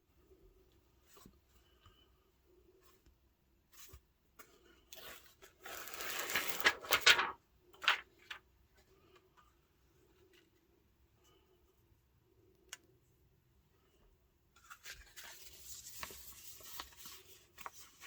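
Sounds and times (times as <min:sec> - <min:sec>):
packaging rustling and crinkling: 0:04.9 - 0:08.4.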